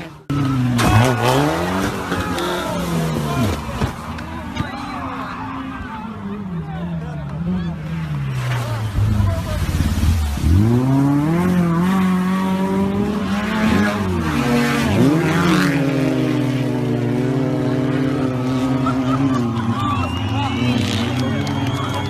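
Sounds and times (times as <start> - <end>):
engine revving hard: 0.0 - 3.8, 8.9 - 19.4.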